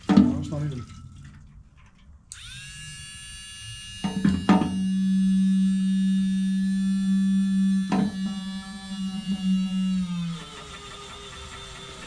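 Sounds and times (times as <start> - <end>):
drum hits: 0.1 - 0.6.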